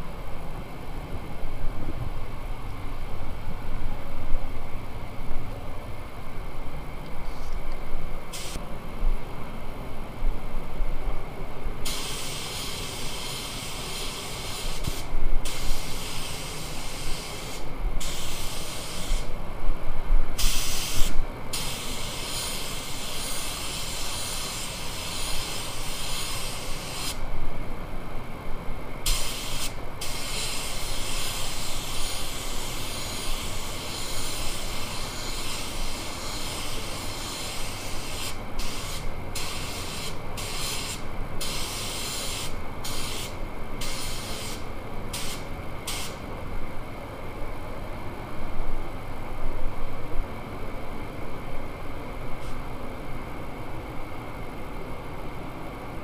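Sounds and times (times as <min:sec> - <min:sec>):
steady background noise: 0:00.0 - 0:56.0
paint spray gun hissing: 0:08.3 - 0:08.6, 0:11.8 - 0:19.3, 0:20.4 - 0:27.2, 0:29.0 - 0:46.2.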